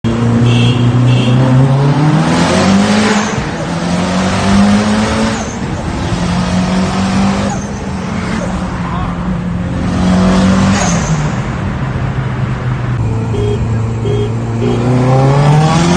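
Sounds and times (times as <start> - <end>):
car engine accelerating hard: 1.4 - 8.7, 13.0 - 15.9.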